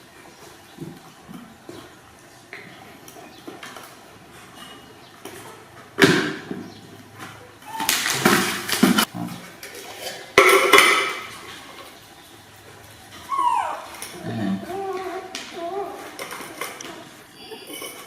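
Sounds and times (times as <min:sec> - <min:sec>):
objects knocking and clattering: 0:03.4 - 0:12.0, 0:15.0 - 0:18.0.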